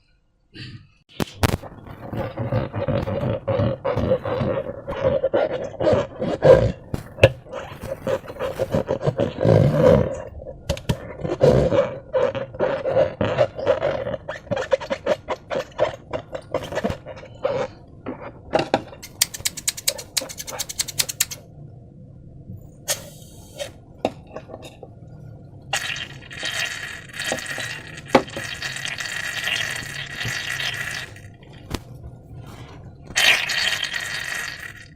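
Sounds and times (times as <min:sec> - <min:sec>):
rattle of sharp clicks: 0:19.0 - 0:21.4.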